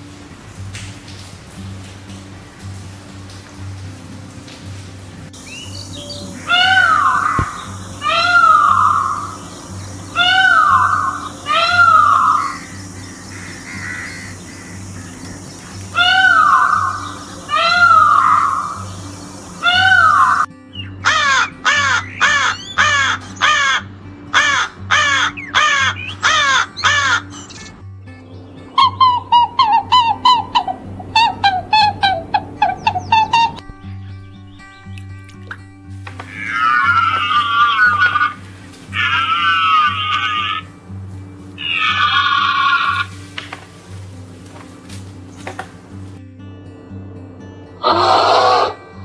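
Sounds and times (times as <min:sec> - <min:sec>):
harsh bird calls: 0:05.9 - 0:23.8, 0:24.4 - 0:33.7, 0:36.2 - 0:40.7, 0:41.6 - 0:43.1
short falling bird calls: 0:10.2 - 0:20.5, 0:28.5 - 0:33.7.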